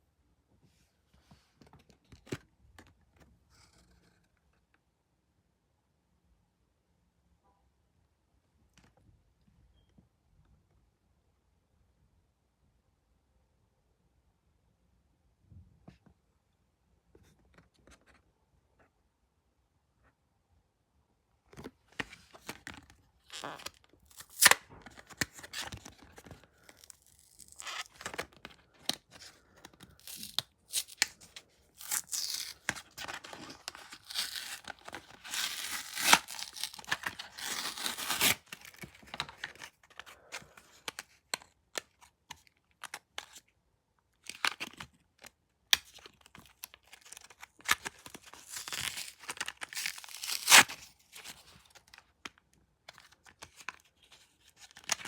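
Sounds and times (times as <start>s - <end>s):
packaging tearing and crinkling: 23.4s - 28.3s, 29.8s - 39.7s, 45.8s - 51.9s.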